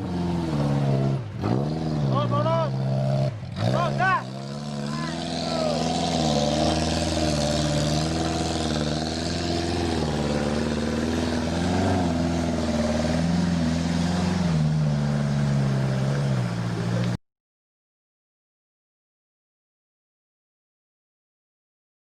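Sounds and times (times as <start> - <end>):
off-road vehicle engine revving: 0.0 - 17.2.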